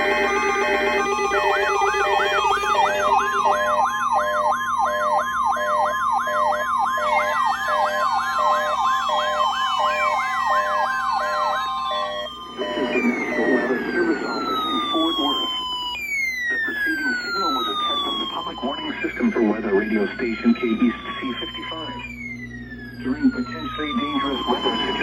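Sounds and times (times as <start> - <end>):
pulsing electronic beep: 0.0 - 25.0
steady electronic tone: 0.0 - 25.0
sweeping siren-like tone: 0.0 - 25.0
slow falling whistles: 6.9 - 19.2, 20.1 - 25.0.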